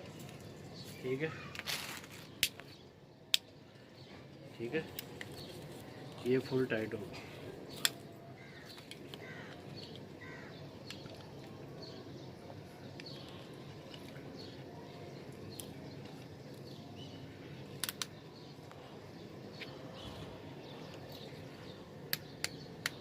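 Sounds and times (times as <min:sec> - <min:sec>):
low outdoor background noise: 0:00.0 - 0:23.0
sharp clicks: 0:17.8 - 0:18.2.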